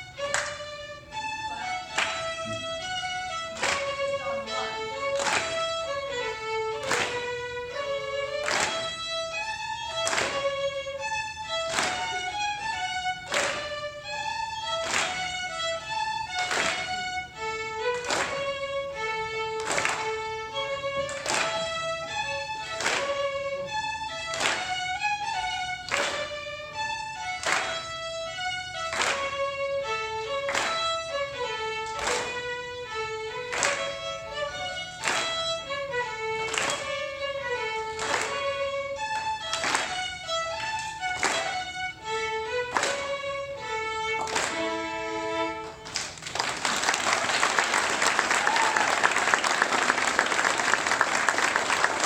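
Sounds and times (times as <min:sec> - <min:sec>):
solo fiddle melody: 0:00.0 - 0:46.0.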